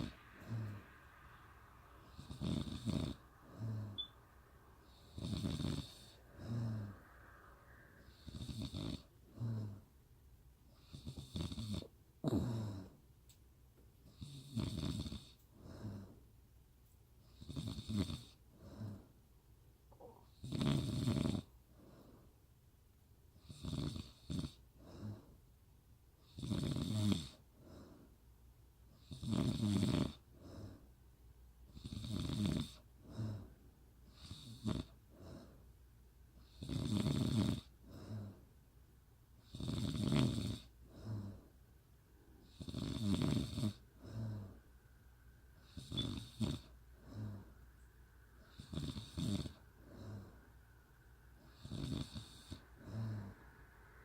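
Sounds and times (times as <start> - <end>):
woman snoring: 0.0 - 0.8, 2.1 - 4.2, 4.8 - 7.1, 8.0 - 9.8, 10.8 - 13.0, 14.1 - 16.1, 17.4 - 19.0, 19.9 - 21.5, 23.4 - 25.2, 26.3 - 27.4, 29.0 - 30.7, 31.8 - 33.4, 34.1 - 35.0, 36.5 - 38.3, 39.5 - 41.4, 42.4 - 44.6, 45.6 - 47.5, 48.4 - 50.3, 51.5 - 53.4.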